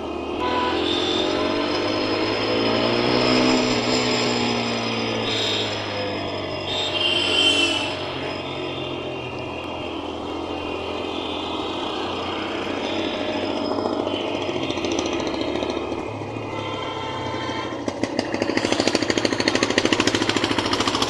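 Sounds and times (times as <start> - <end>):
road noise: 0.0 - 21.0
vehicle engine hum: 0.0 - 21.0.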